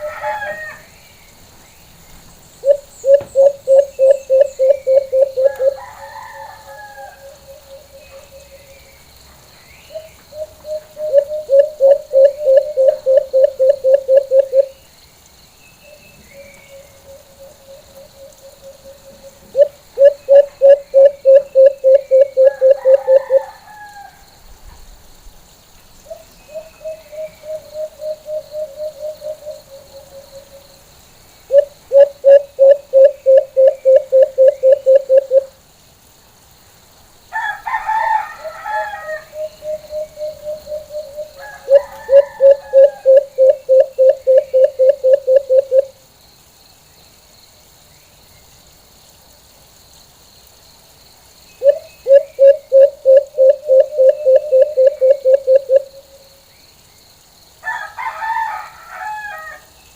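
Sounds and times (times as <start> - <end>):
dove hooting: 2.6 - 8.7, 9.9 - 14.7, 16.4 - 23.9, 26.1 - 30.6, 31.5 - 35.5, 38.4 - 46.0, 51.6 - 56.1.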